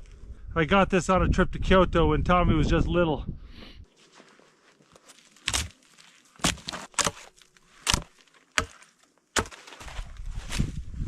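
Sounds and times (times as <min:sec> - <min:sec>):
blade chopping into wood: 0:05.4 - 0:05.8, 0:06.4 - 0:10.1.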